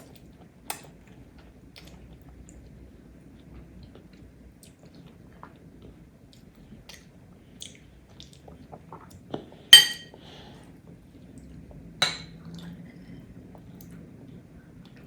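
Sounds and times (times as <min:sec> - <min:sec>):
soft chewing: 0:00.0 - 0:09.6
tableware clinking: 0:09.8 - 0:10.1.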